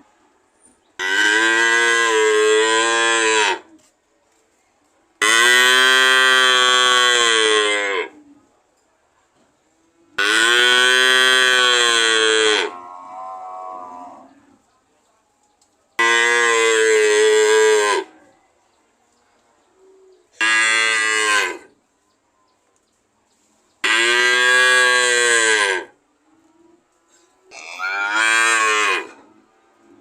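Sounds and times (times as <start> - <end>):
cow mooing: 10.2 - 14.4, 23.8 - 25.9, 27.5 - 29.2.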